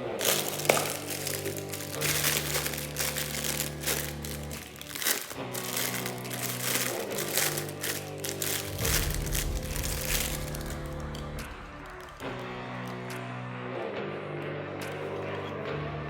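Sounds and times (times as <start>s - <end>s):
plastic packaging crinkling: 0.0s - 13.2s
background music low notes: 0.0s - 16.0s.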